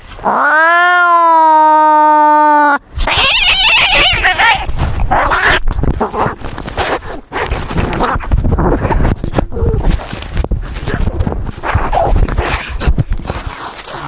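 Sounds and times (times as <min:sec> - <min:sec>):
cat cries: 0:00.2 - 0:05.7
cats fighting scuffle: 0:04.0 - 0:14.0.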